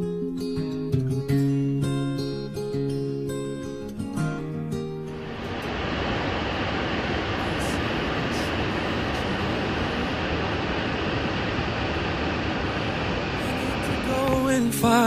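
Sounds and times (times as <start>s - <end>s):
waterfall roaring: 5.1s - 15.0s.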